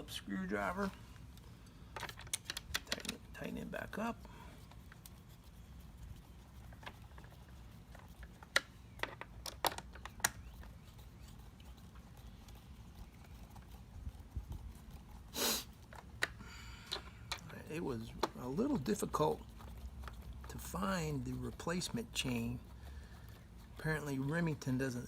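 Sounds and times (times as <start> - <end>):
low steady rumble: 0.0 - 25.0.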